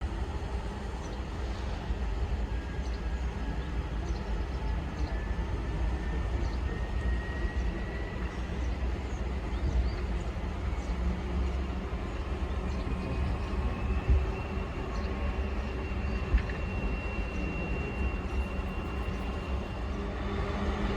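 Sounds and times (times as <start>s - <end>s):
diesel locomotive rumbling: 0.0s - 20.9s
high whine rising in pitch: 12.8s - 20.9s.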